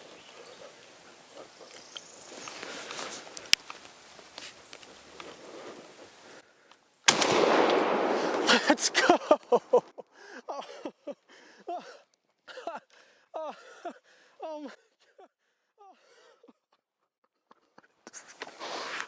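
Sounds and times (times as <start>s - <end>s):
shotgun blast: 7.1s - 9.1s.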